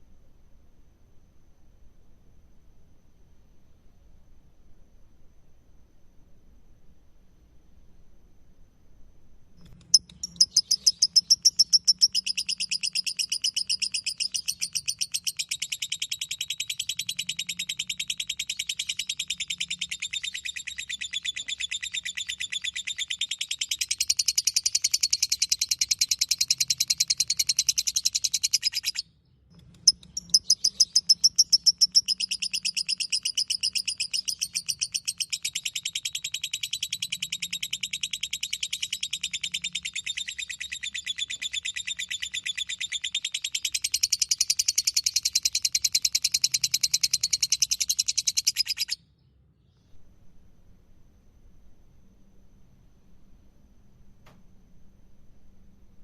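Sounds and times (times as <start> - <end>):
bird chattering chirps: 9.8 - 29.0, 29.6 - 49.0.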